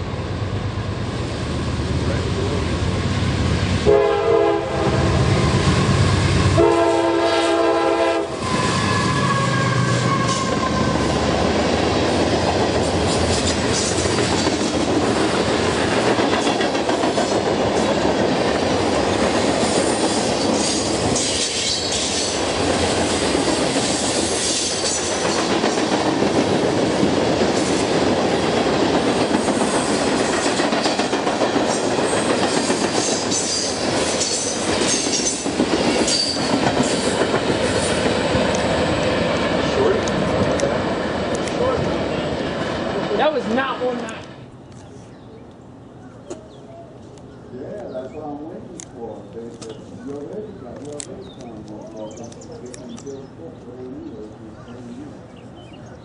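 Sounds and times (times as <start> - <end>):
train rumbling past: 0.0 - 56.0
train horn blasts: 3.8 - 5.3, 6.5 - 10.9
train wheel squeal: 8.4 - 11.0, 19.6 - 22.4, 23.8 - 25.5, 32.1 - 37.3
wheels clacking over rail joints: 10.3 - 44.4.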